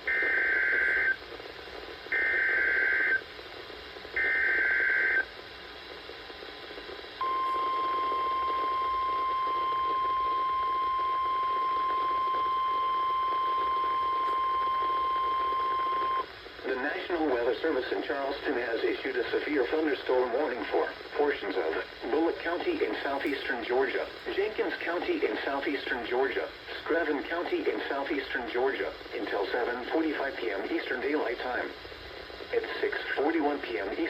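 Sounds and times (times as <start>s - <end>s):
steady warning alarm tone: 7.2s - 16.3s.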